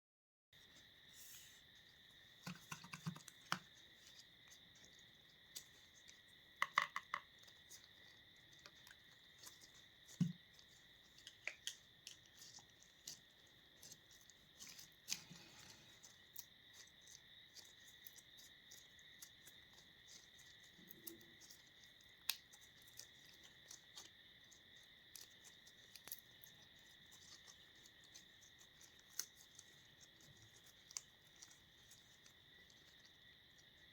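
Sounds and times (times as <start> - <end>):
slime squishing with clicks and pops: 20.4 - 24.1.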